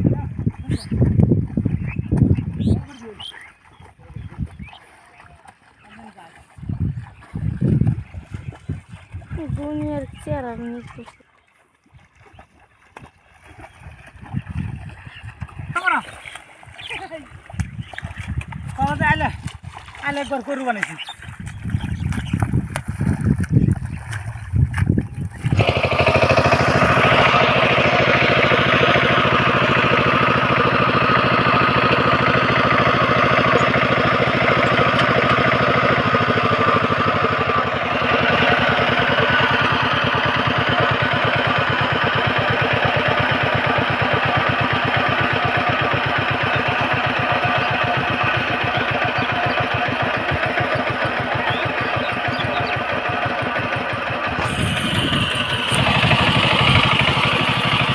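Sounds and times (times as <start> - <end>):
small engine running: 12.2 - 57.9.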